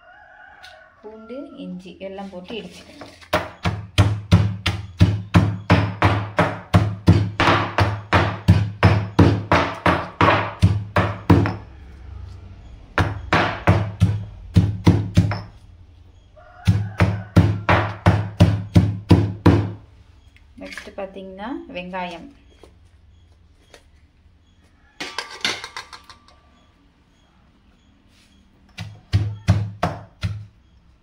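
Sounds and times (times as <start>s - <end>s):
pestle pounding in mortar: 2.9s - 11.7s, 13.0s - 15.6s, 16.6s - 19.8s, 28.7s - 30.7s.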